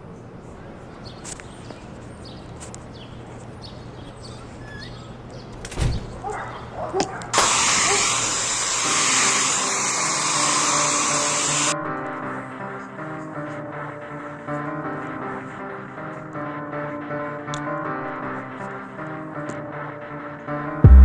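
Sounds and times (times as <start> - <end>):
air duster rushing hiss: 7.4 - 11.8.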